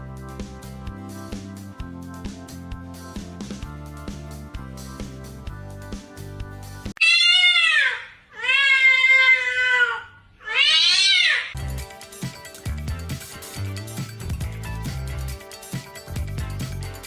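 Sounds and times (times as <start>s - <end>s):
background music: 0.0s - 7.0s, 11.6s - 17.0s
cat yowling meows: 7.0s - 11.6s.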